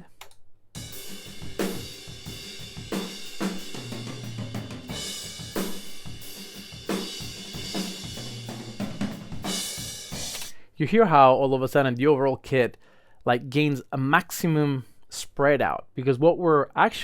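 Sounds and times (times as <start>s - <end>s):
kick and snare drum beat: 0.8s - 10.4s.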